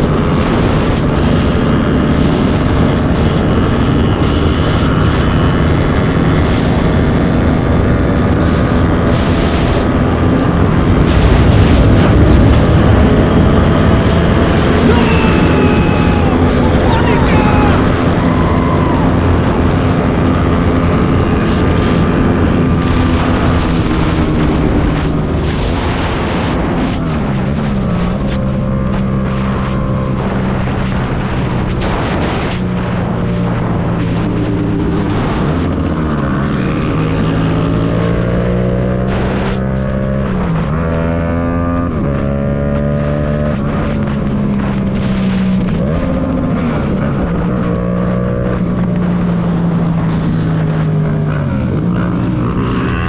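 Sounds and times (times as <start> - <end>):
motorcycle engine revving: 0.0 - 18.4, 35.6 - 53.0.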